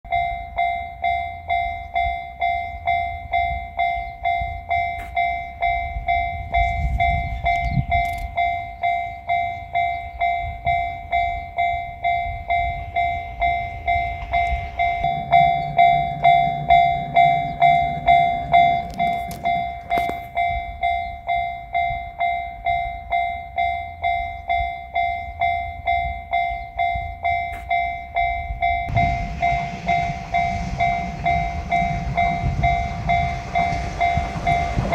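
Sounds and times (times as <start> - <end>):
level crossing bell ringing: 0.1 - 34.9
low engine hum: 13.4 - 20.4, 28.9 - 34.9.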